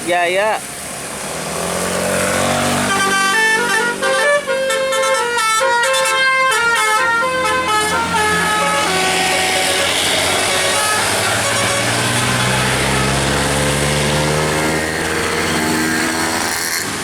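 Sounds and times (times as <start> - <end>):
vehicle noise: 0.0 - 17.0
musical air horn tune: 2.8 - 13.5.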